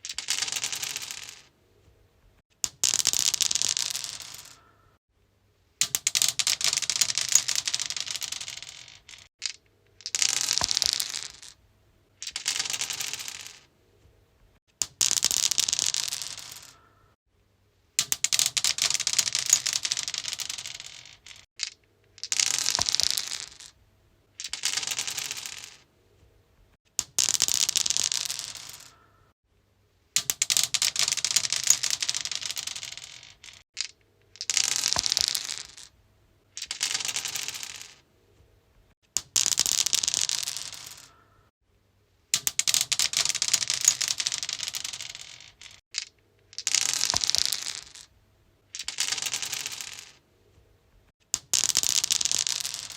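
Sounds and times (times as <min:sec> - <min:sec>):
dice clattering on stone: 0:00.0 - 0:01.5, 0:02.6 - 0:04.7, 0:05.8 - 0:11.6, 0:12.2 - 0:13.7, 0:14.8 - 0:16.8, 0:18.0 - 0:23.8, 0:24.4 - 0:25.9, 0:27.0 - 0:29.0, 0:30.2 - 0:35.9, 0:36.5 - 0:38.0, 0:39.2 - 0:41.2, 0:42.4 - 0:48.1, 0:48.7 - 0:50.2, 0:51.3 - 0:52.9.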